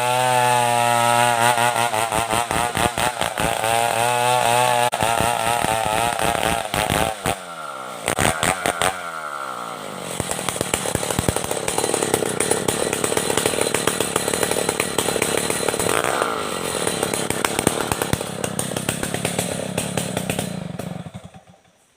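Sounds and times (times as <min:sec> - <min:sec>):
chainsaw sawing timber: 0:00.0 - 0:21.8.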